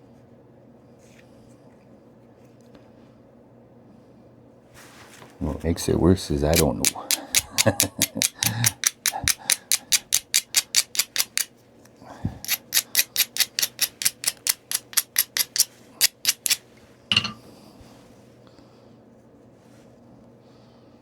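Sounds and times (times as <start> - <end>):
stone rubbing on stone: 12.4 - 17.3.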